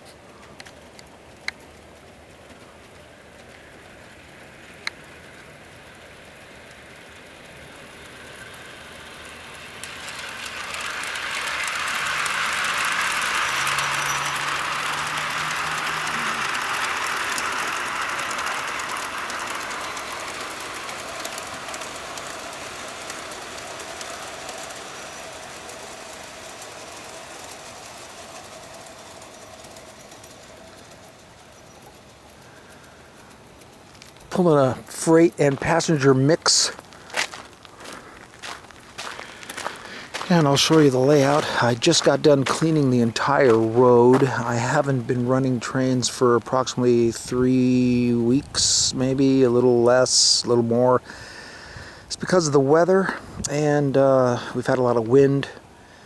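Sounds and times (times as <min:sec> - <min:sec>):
low motor hum: 0:00.0 - 0:56.0
metal wheels rolling on track: 0:00.0 - 0:56.0
rapid fine clicking: 0:00.0 - 0:56.0.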